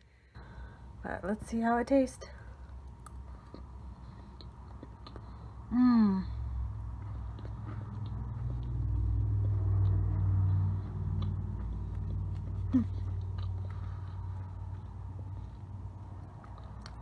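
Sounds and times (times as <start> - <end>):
closed-mouth hum: 0.0 - 17.0
person chewing: 2.5 - 17.0
low rumble: 5.5 - 17.0.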